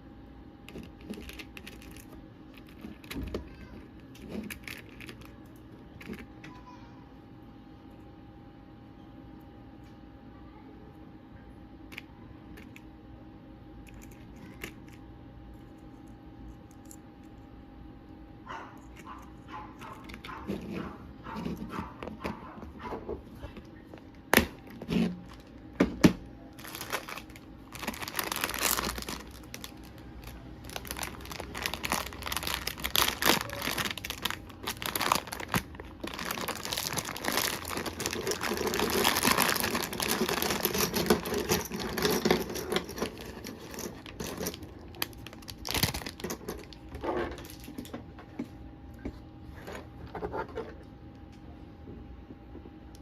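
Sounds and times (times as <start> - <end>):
packaging crinkling and tearing: 26.5 - 47.9.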